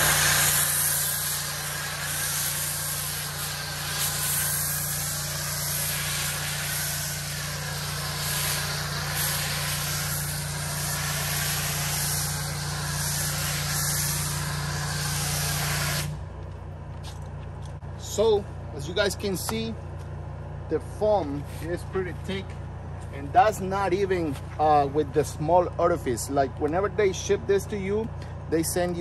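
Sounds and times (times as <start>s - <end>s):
foam spray hissing: 0.0s - 16.2s
pressure washer humming: 0.0s - 17.1s.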